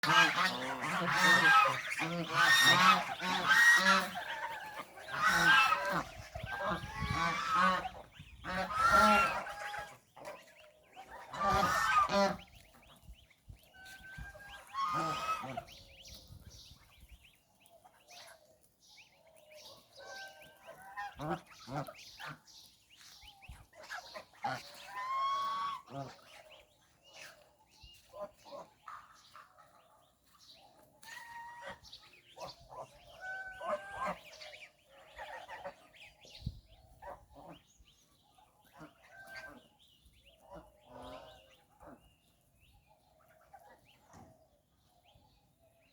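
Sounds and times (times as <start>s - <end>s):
geese honking: 0.0s - 12.7s, 13.8s - 15.8s, 23.8s - 26.6s, 31.0s - 34.5s.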